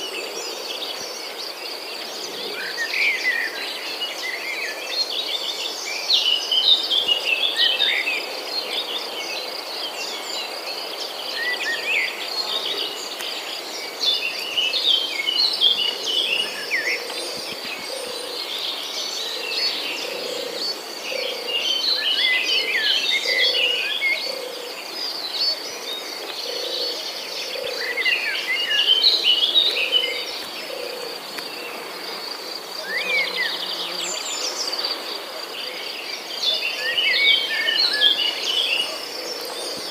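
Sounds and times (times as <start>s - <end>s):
insects trilling: 9.4s - 39.9s.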